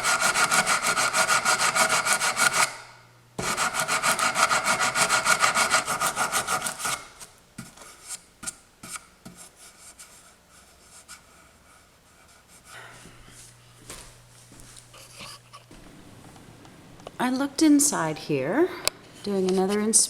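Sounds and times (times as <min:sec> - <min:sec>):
saw cutting wood: 0:00.0 - 0:02.8, 0:03.4 - 0:07.1.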